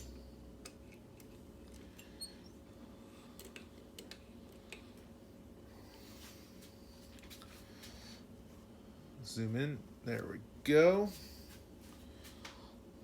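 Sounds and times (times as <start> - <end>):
low steady hum: 0.0 - 13.0
small clicks of lock parts: 3.4 - 4.9.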